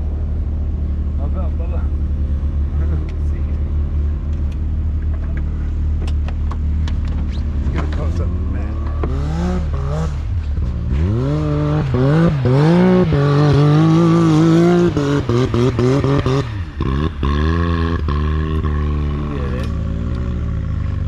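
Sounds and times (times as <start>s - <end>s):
utility vehicle engine revving: 0.0s - 21.0s.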